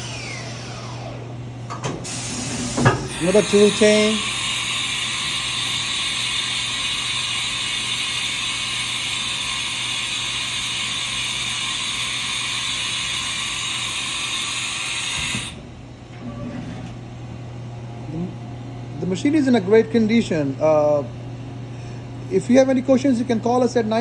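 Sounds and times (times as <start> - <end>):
machine high-pitched whir: 0.0 - 1.4, 2.0 - 15.6
steady low hum: 0.0 - 24.0.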